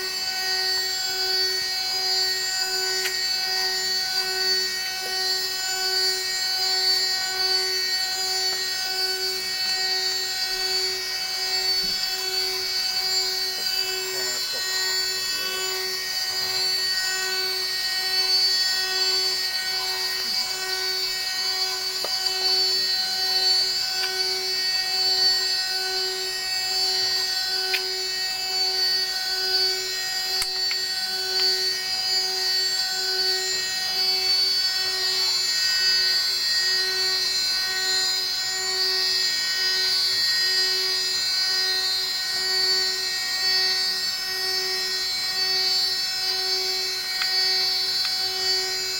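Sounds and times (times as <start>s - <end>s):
pulsing low tone: 0.0s - 38.0s
milling machine spindle whine: 0.0s - 48.9s.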